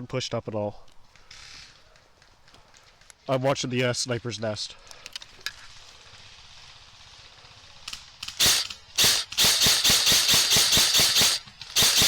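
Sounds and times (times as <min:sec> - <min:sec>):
airsoft rifle firing full auto: 0:08.2 - 0:12.0.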